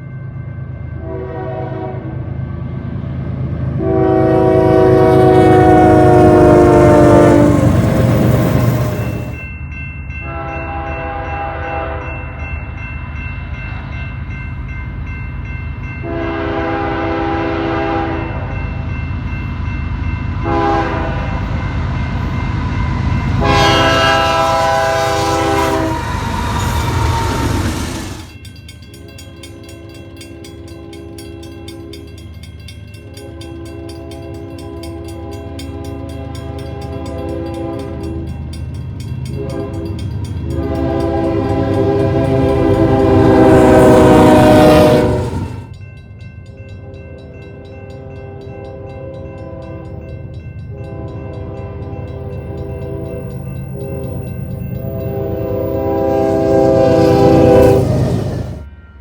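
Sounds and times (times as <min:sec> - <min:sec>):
passing train rumble: 0:00.0 - 0:59.0
locomotive air horn blasts: 0:01.0 - 0:02.2, 0:03.8 - 0:07.8, 0:10.2 - 0:12.1, 0:16.0 - 0:18.5, 0:20.4 - 0:21.4, 0:23.3 - 0:28.3, 0:35.2 - 0:38.2, 0:39.3 - 0:45.6, 0:50.7 - 0:53.2, 0:54.7 - 0:58.6.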